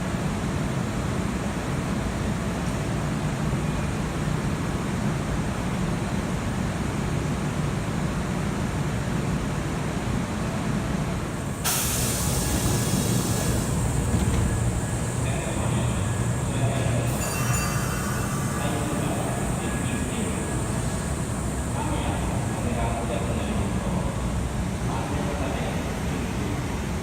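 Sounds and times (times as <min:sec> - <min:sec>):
electric train low rumble: 0:00.0 - 0:27.0
compressed air hiss: 0:11.6 - 0:16.3.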